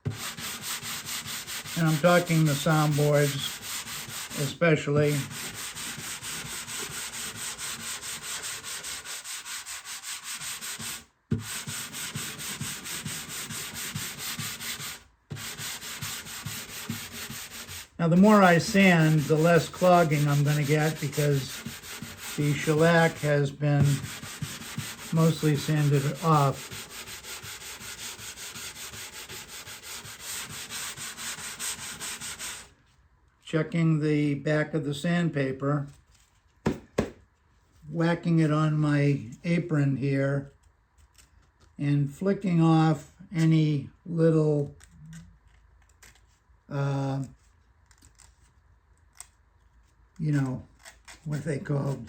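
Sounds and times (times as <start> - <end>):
sandpaper rubbing on wood: 0.1 - 32.7, 50.3 - 52.0.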